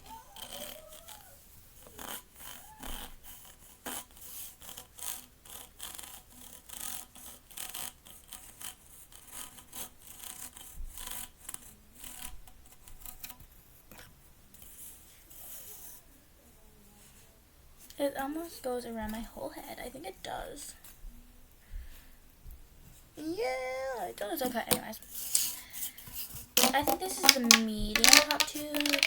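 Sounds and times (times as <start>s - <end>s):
pop tube toy rasping clicks: 26.6s - 29.0s.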